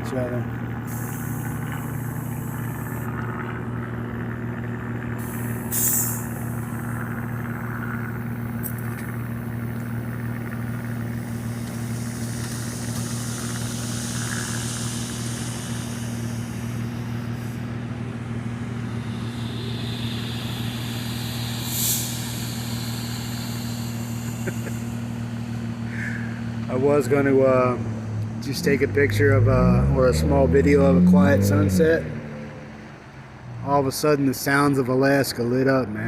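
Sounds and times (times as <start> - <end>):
low engine hum: 0.0 - 36.0.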